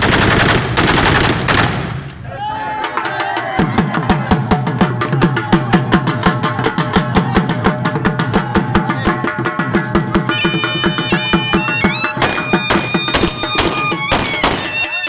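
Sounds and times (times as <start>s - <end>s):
drum in fast rhythm: 2.7s - 15.0s
high melody line: 10.1s - 15.0s.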